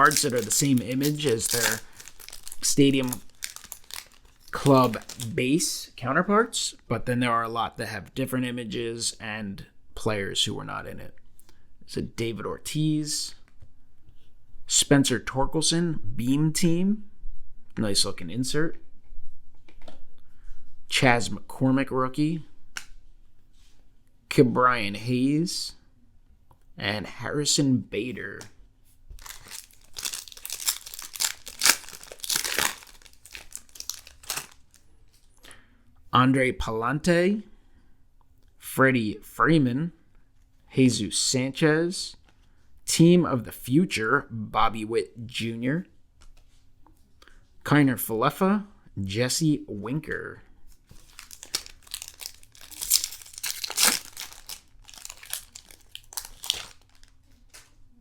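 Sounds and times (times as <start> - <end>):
foil wrapper crinkling and tearing: 0.0 - 5.4, 29.2 - 34.8, 50.9 - 57.8.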